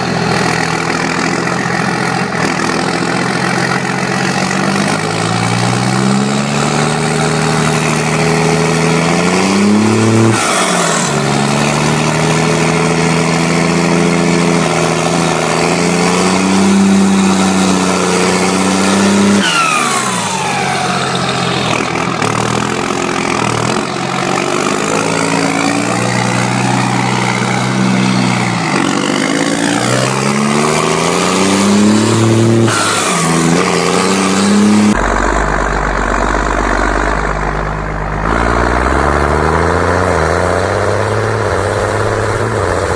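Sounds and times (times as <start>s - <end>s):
tractor engine revving: 0.0s - 42.9s.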